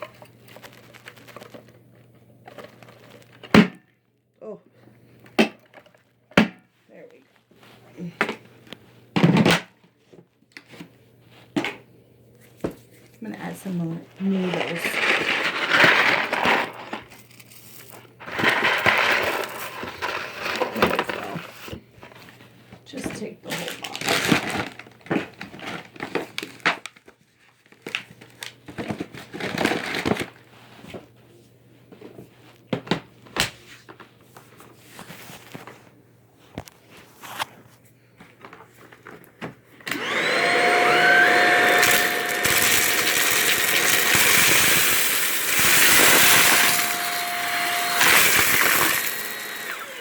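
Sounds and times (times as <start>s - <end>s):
vacuum cleaner whining: 18.3s - 21.8s, 39.8s - 50.0s.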